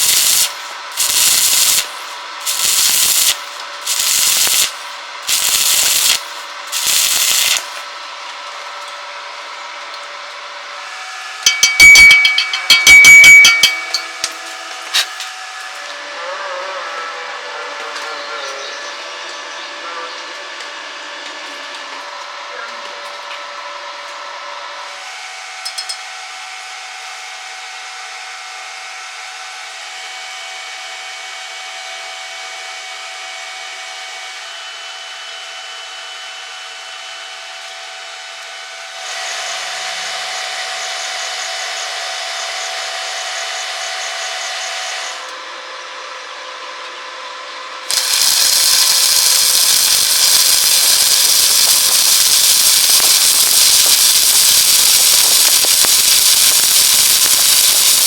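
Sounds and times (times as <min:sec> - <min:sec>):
welding arc crackling hiss: 0:00.0 - 0:09.5, 0:10.7 - 0:15.9, 0:47.9 - 0:58.0
power tool whining: 0:00.0 - 0:22.3, 0:35.6 - 0:47.0, 0:47.8 - 0:58.0.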